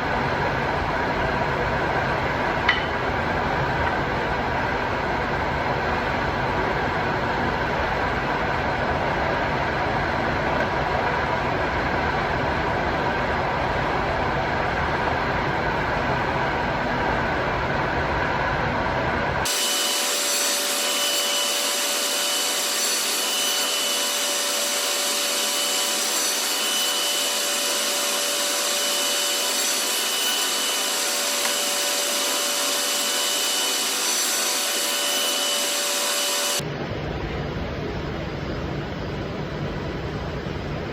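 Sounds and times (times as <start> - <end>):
surface planer running: 19.4 - 36.6.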